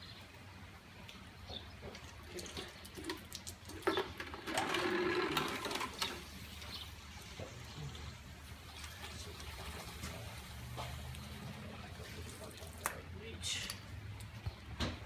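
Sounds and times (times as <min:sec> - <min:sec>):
liquid pouring into container: 0:02.1 - 0:06.6, 0:08.5 - 0:13.0.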